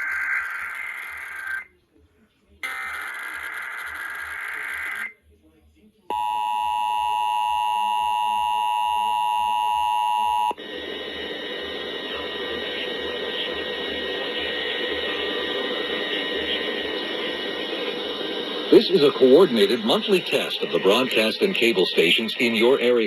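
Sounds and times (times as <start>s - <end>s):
steady hiss: 11.4s - 23.0s.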